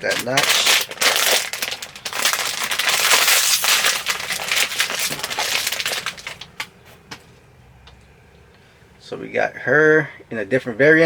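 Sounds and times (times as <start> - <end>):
plastic bag crinkling: 0.0 - 6.7.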